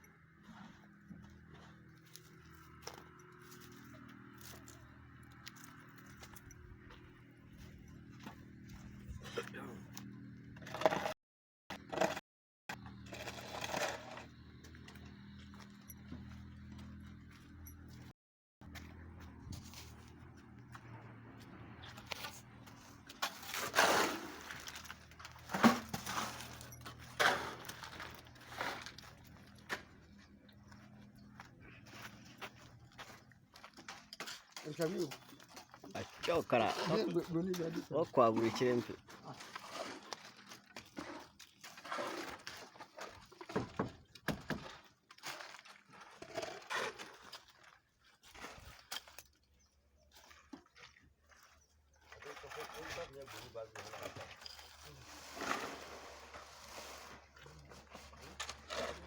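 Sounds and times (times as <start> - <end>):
hand tools scraping wet concrete: 10.6 - 11.2, 13.0 - 14.4, 21.9 - 30.3, 31.8 - 43.7, 44.4 - 49.7, 51.8 - 59.0.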